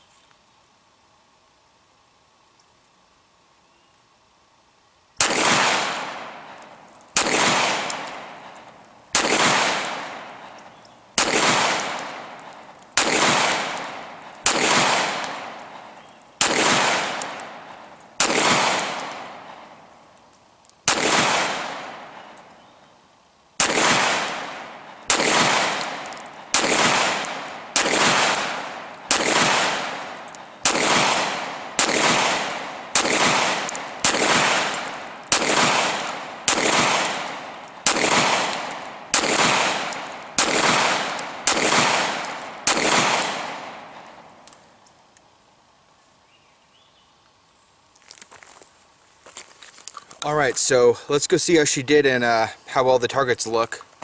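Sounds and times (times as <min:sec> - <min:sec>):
gunshots with echo: 0:05.2 - 0:06.5, 0:07.2 - 0:08.5, 0:09.2 - 0:10.4, 0:11.2 - 0:12.4, 0:13.0 - 0:15.8, 0:16.4 - 0:19.7, 0:20.9 - 0:22.2, 0:23.6 - 0:44.2.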